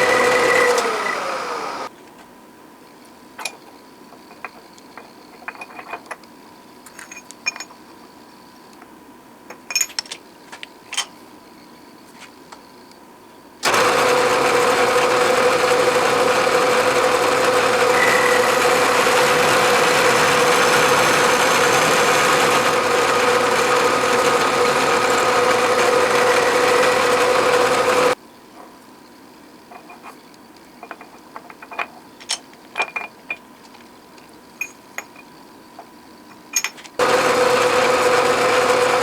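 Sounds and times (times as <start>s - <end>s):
milling machine cutting steel whine: 0.0s - 1.9s, 13.6s - 28.2s, 37.0s - 39.0s.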